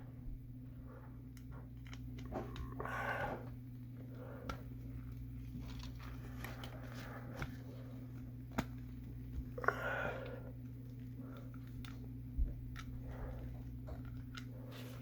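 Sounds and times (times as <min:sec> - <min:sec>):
low electrical hum: 0:00.0 - 0:15.0
headset handling rustling: 0:04.6 - 0:09.6.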